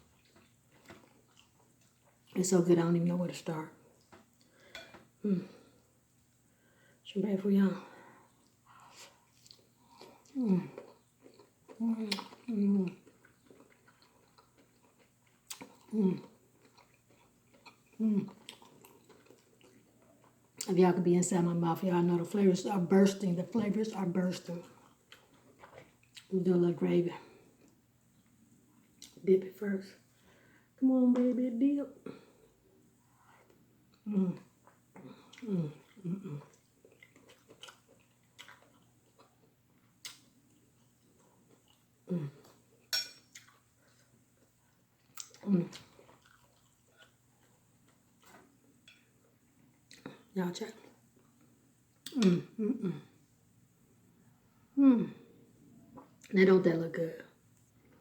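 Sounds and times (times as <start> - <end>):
person chewing food: 0.0 - 2.4, 8.2 - 20.7, 24.6 - 26.3, 32.3 - 53.1
person humming: 34.1 - 34.4, 52.1 - 53.1
wet mouth clicks: 52.0 - 52.5.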